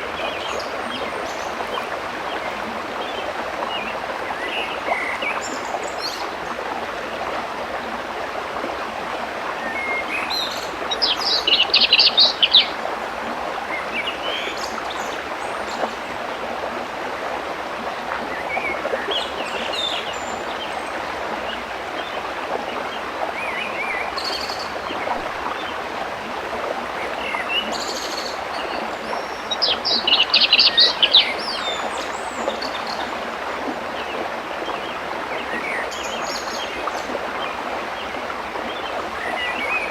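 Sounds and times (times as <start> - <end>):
small birds chirping: 9.7 - 12.8, 29.0 - 33.1.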